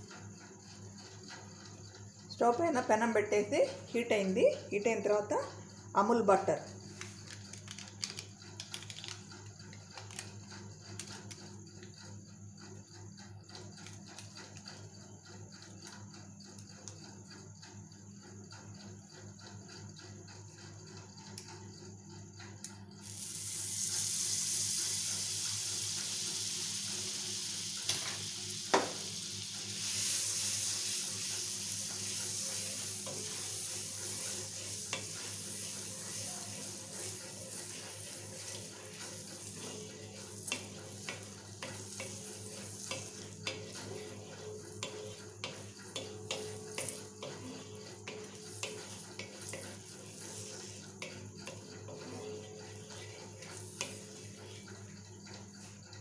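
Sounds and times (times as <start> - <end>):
food sizzling in hot pan: 23.0 - 54.8.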